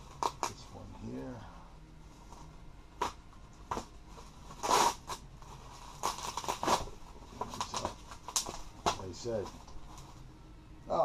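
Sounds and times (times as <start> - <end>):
packaging crackling: 0.0 - 0.6, 4.5 - 10.2
packaging rustling and tearing: 0.0 - 0.7, 3.0 - 10.2.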